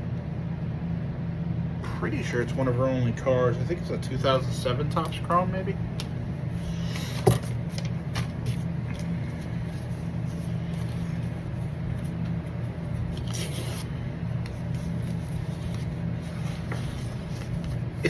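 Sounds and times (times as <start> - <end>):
steady low hum: 0.0 - 18.0
paper envelope crackling: 7.5 - 18.0
envelope tearing: 10.6 - 18.0.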